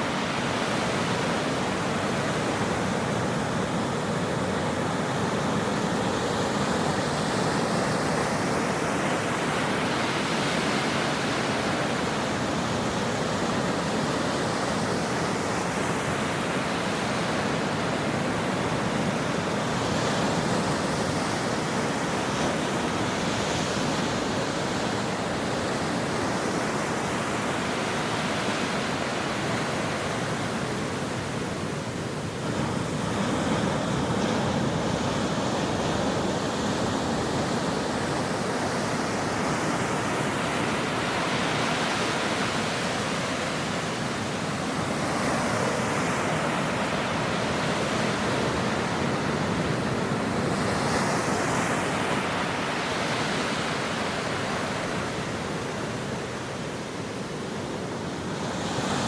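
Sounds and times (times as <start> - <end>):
ocean waves breaking: 0.0 - 59.0.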